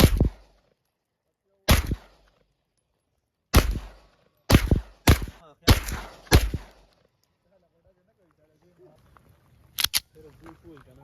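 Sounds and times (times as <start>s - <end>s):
pistol shots: 0.0s - 0.6s, 1.7s - 2.4s, 3.5s - 7.0s.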